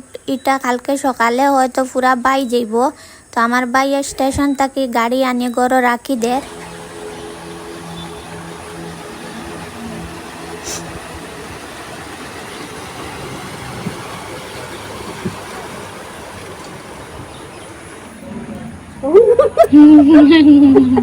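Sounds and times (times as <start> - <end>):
low engine hum: 6.4 - 21.0
vehicle rumble: 6.4 - 21.0.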